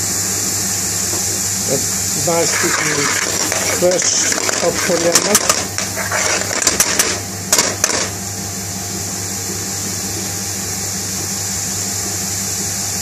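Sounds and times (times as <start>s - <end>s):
kitchen machinery hum and hiss: 0.0s - 13.0s
sharp clicks: 2.8s - 8.2s.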